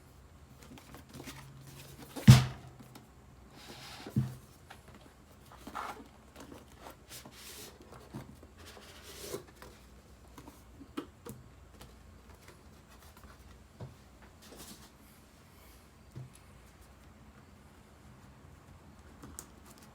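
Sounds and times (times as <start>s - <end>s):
handling rustles and taps: 0.5s - 3.1s, 3.7s - 15.0s, 18.5s - 19.9s.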